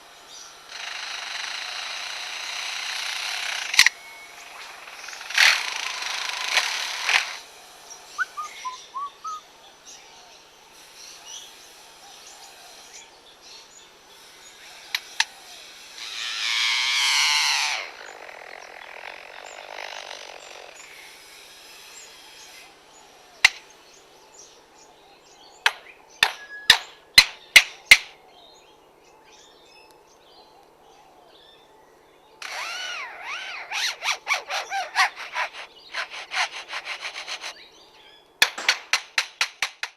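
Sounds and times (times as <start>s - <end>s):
loud pitched whirr: 0.0s - 8.8s, 15.6s - 22.6s, 32.4s - 37.6s
bird mimicking power tool whirring: 0.0s - 9.4s, 10.8s - 23.6s, 32.4s - 37.8s
bird chirps: 7.9s - 9.5s
sharp knocks: 38.4s - 39.9s.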